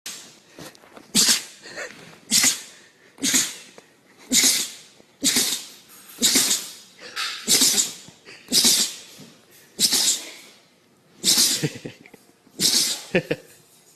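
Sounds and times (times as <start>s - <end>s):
person sneezing: 1.1s - 10.6s, 11.2s - 12.0s, 12.6s - 13.2s.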